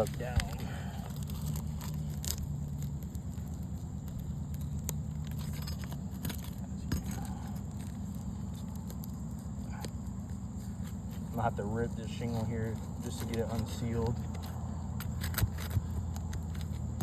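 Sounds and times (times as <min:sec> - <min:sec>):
steady low hum: 0:00.0 - 0:17.0
tool clicks taps and scrapes: 0:12.2 - 0:17.0.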